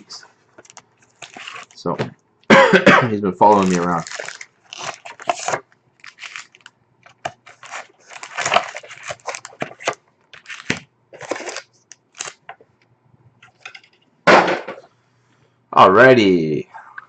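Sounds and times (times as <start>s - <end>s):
cardboard and wrappers ripping: 0.6s - 1.8s, 3.4s - 12.4s.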